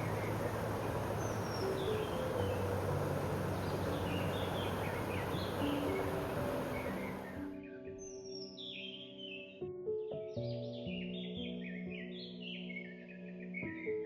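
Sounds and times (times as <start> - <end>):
rushing stream water: 0.0 - 7.4
small birds chirping: 0.0 - 7.5.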